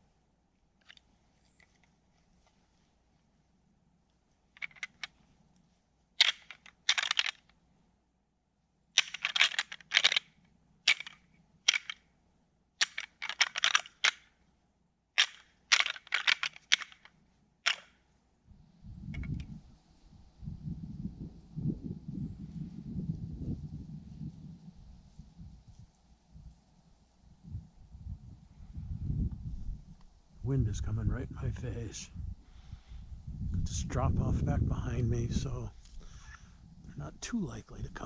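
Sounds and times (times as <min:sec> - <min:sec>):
antlers rattling and clacking: 0:04.5 - 0:05.2, 0:06.2 - 0:07.5, 0:09.0 - 0:12.0, 0:12.8 - 0:14.3, 0:15.2 - 0:18.0.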